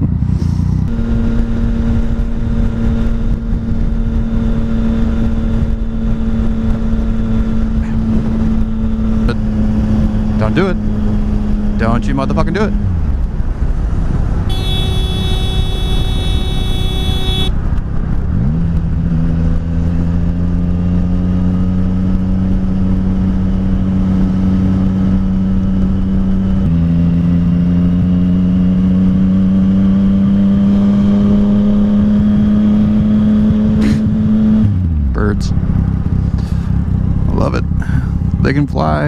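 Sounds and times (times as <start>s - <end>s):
motorcycle engine accelerating: 0.0s - 39.0s
horn sounding: 14.5s - 17.6s.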